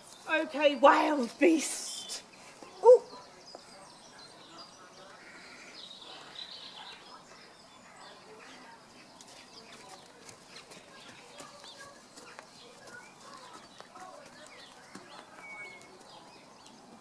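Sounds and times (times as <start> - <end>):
birds chirping: 0.0 - 17.0.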